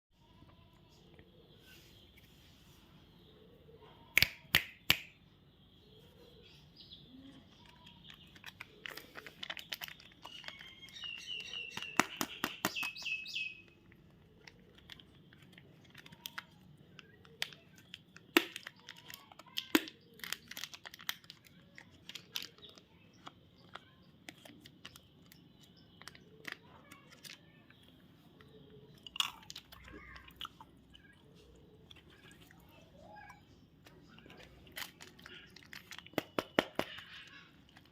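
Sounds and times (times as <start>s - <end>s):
packaging clicks: 7.5s - 27.8s, 33.8s - 37.9s
wrappers crinkling: 7.6s - 12.4s, 13.7s - 22.8s, 33.9s - 37.9s.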